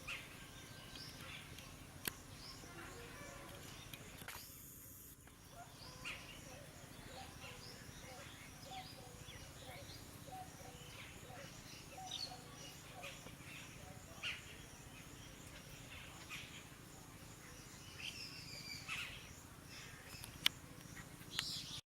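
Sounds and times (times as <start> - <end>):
low background hum: 0.0 - 21.8
bird chirps: 5.3 - 21.8.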